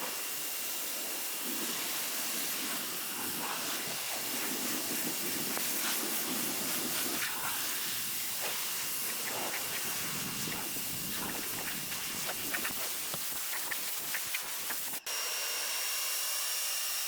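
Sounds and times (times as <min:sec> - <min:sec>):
pressure washer water jet hissing: 0:00.0 - 0:15.1.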